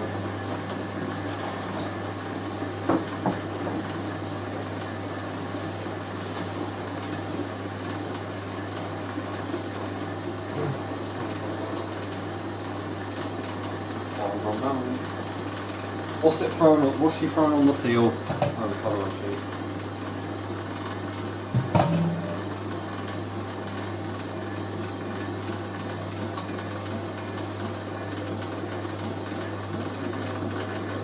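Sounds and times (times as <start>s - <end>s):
drain pump humming: 0.0s - 31.0s
washing machine drum turning: 21.4s - 22.6s.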